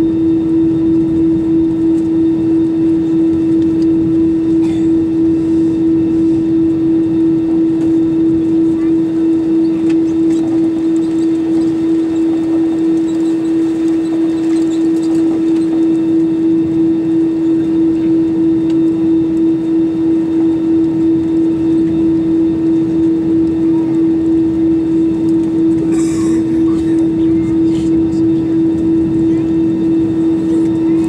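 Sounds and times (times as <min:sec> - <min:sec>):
airplane cabin drone: 0:00.0 - 0:31.0.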